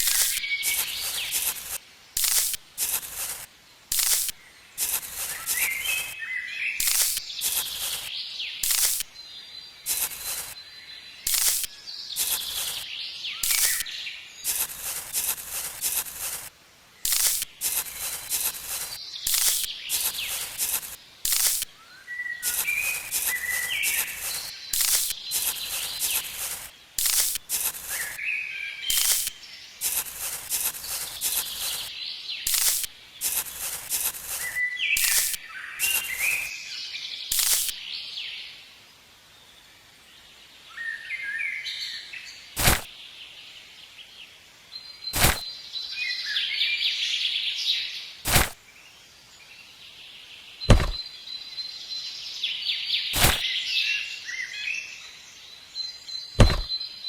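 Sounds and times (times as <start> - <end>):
birds chirping: 0.0 - 38.3.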